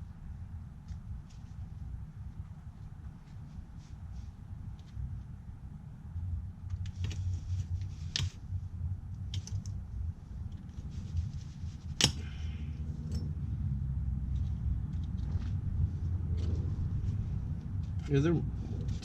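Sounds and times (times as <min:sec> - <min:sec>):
steady low hum: 0:00.0 - 0:19.0
metallic clicks of hand tools: 0:12.0 - 0:12.3.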